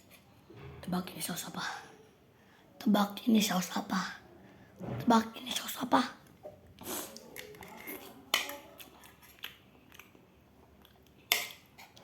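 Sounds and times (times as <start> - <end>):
chewing and biting food: 7.3 - 11.2.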